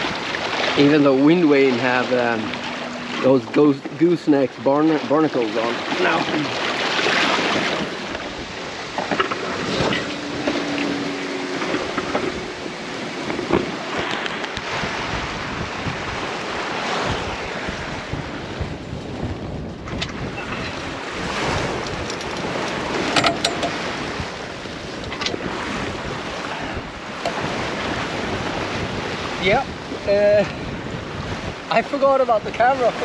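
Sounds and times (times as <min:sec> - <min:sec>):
boat creaking: 0:00.0 - 0:32.0
water rushing along boat hull: 0:00.0 - 0:33.0
wind buffeting microphone: 0:00.0 - 0:33.0
knocks on boat: 0:21.5 - 0:23.9.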